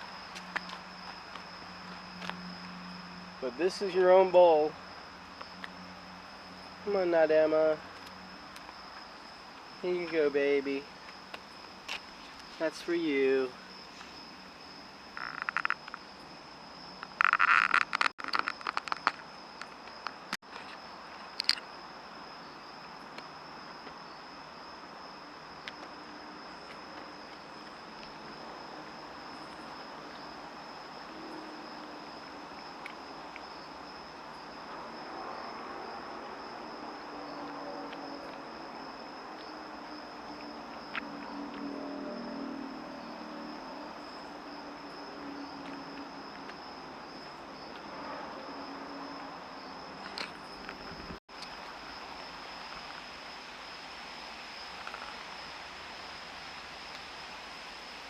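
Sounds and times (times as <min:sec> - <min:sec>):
insects chirring: 0:00.0 - 0:58.0.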